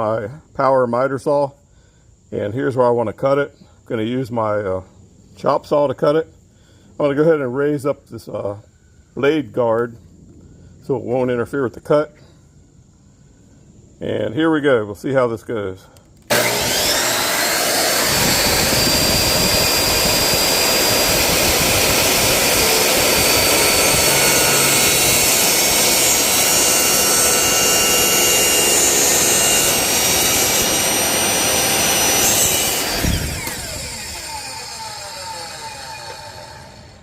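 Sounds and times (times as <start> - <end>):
miter saw cutting acrylic: 16.3 - 37.0
saw blade winding down: 16.3 - 37.0.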